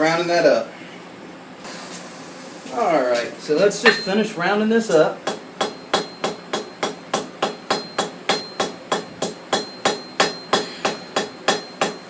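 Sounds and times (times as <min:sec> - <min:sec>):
hammer striking metal on anvil: 0:03.8 - 0:04.3, 0:05.2 - 0:12.0.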